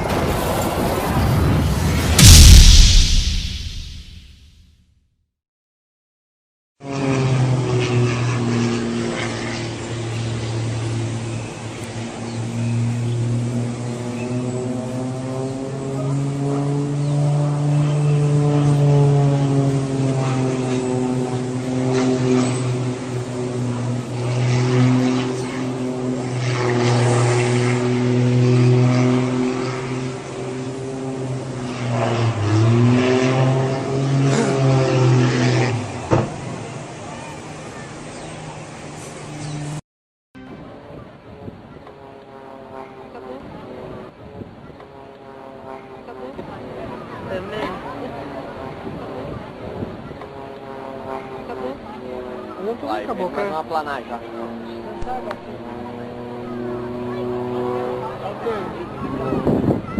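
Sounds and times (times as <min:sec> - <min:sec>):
engine droning: 0:06.8 - 0:39.8, 0:40.4 - 0:59.9.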